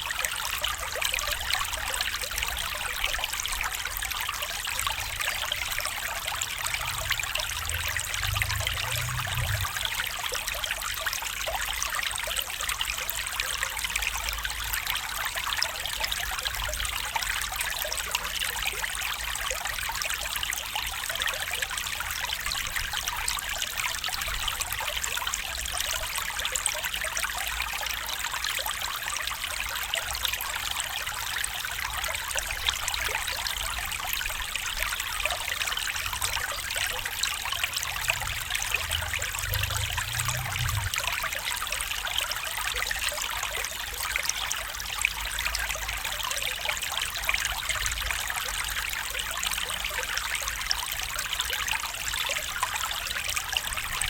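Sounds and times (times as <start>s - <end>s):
stream trickling over stones: 0.0s - 54.0s
brief low rumble: 6.6s - 9.9s, 37.8s - 41.1s.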